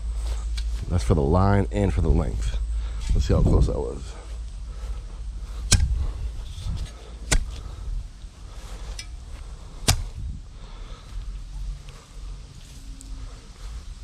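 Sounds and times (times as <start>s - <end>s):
wind rumble on microphone: 0.0s - 14.0s
sharp snaps: 5.6s - 6.0s, 7.3s - 7.6s, 9.8s - 10.2s.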